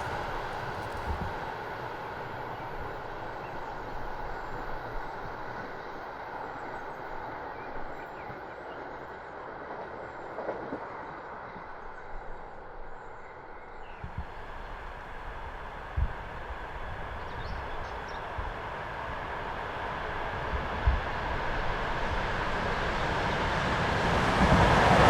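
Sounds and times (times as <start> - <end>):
train wheels rumbling on rails: 0.0 - 9.0, 14.0 - 25.0.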